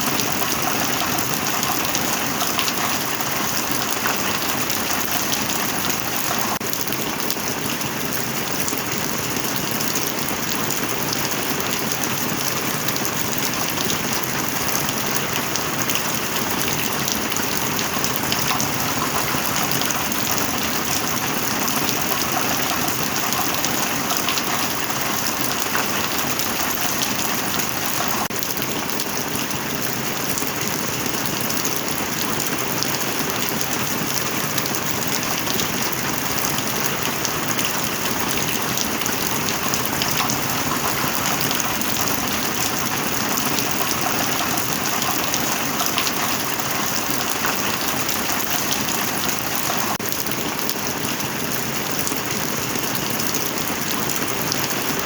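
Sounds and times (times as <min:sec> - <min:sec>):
heavy rain hissing: 0:00.0 - 0:06.8, 0:13.8 - 0:28.4, 0:33.8 - 0:50.0.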